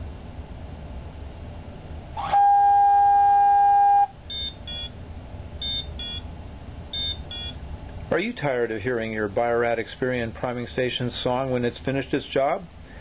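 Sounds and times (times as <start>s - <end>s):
electronic beeps: 3.8s - 5.0s, 5.6s - 6.3s, 7.0s - 7.6s.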